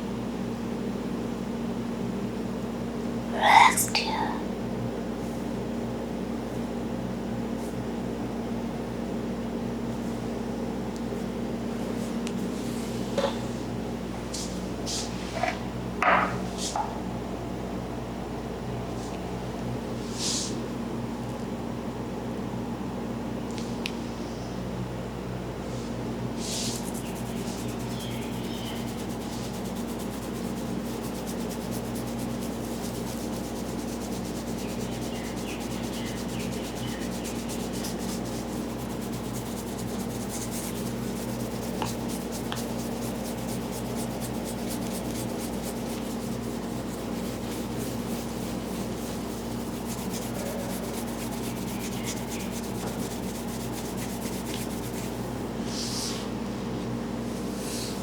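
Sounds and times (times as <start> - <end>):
steady low hum: 0.0 - 58.0
head massage rubbing: 26.4 - 55.4.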